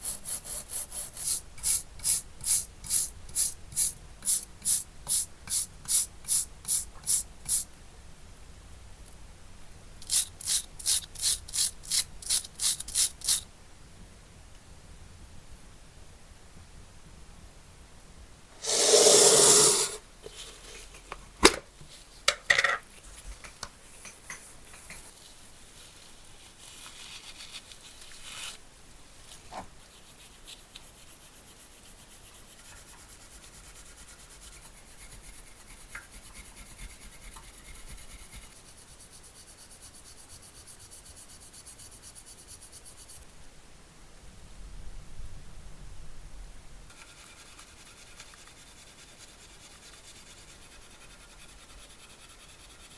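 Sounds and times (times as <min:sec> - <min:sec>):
filing strokes on metal: 0:46.9 - 0:52.9.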